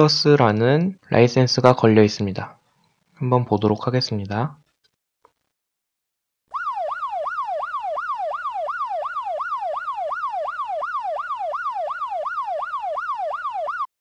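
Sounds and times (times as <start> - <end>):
police siren yelping: 6.5 - 13.9.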